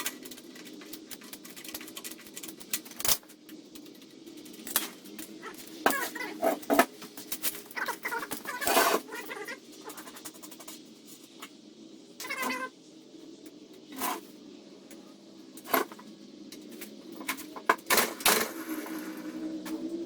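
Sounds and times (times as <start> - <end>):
cat meowing: 7.8 - 10.0, 12.2 - 12.7.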